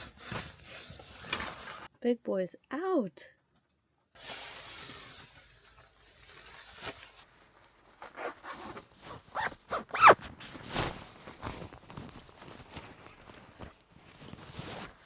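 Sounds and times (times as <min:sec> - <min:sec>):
zipper being pulled: 0:08.0 - 0:15.0.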